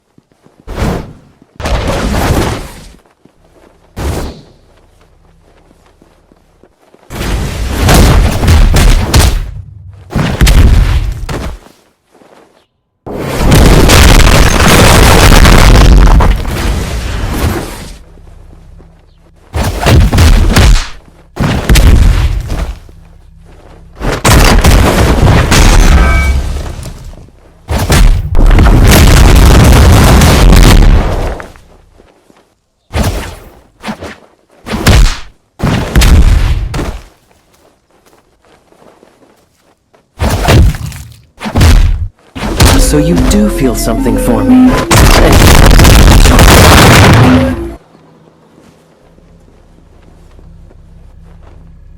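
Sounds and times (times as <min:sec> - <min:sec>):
rough booming bursts: 0:07.1 - 0:11.2, 0:13.4 - 0:17.4, 0:44.8 - 0:47.8
distorted booming blasts: 0:13.4 - 0:17.4, 0:19.8 - 0:22.5, 0:24.2 - 0:26.6, 0:27.9 - 0:31.1, 0:42.6 - 0:47.8
faint low hum: 0:21.0 - 0:24.0, 0:42.6 - 0:51.9.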